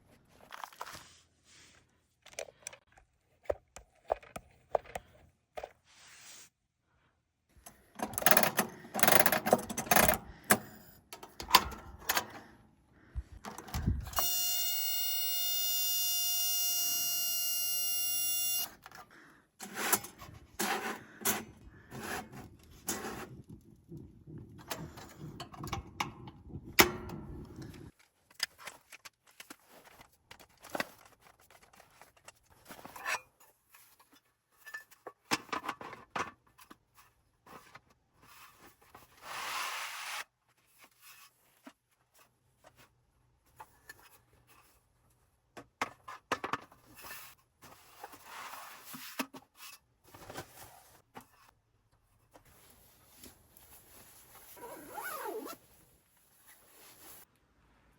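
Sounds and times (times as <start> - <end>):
rustling: 52.2 - 57.4.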